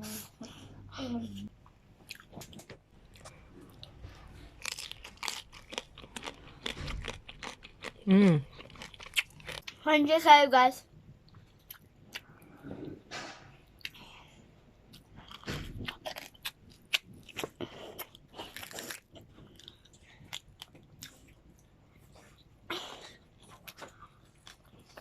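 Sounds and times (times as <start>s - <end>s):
chewing crispy food: 2.0s - 9.8s, 14.9s - 22.5s, 23.2s - 25.0s.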